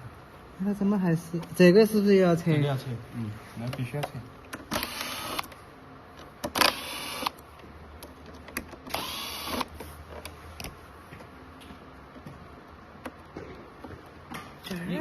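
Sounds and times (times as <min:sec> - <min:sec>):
cordless screwdriver whirring: 0:04.7 - 0:05.5, 0:06.5 - 0:07.4, 0:08.9 - 0:09.7.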